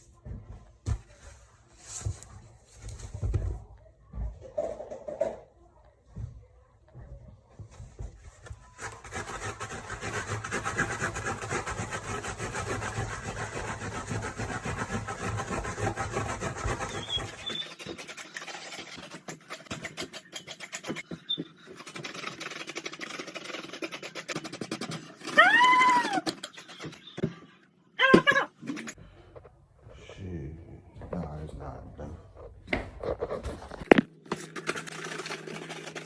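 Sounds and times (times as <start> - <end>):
rough scraping and rubbing: 8.8 - 27.2.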